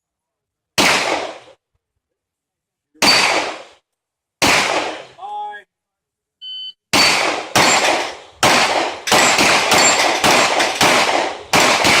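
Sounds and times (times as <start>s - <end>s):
pistol shots: 0.8s - 1.5s, 3.0s - 3.8s, 4.4s - 5.1s, 6.9s - 12.0s
shot timer beep: 6.4s - 7.1s.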